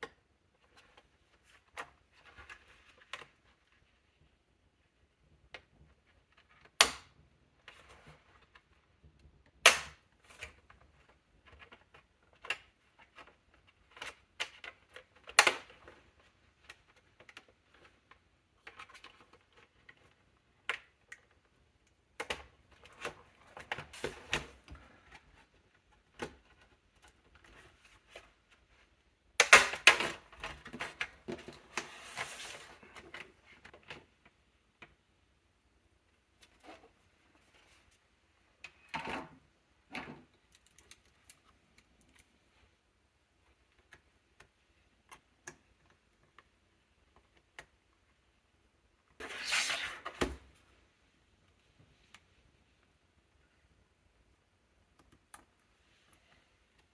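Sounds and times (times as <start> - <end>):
clicks of small parts handled: 40.4 - 42.3.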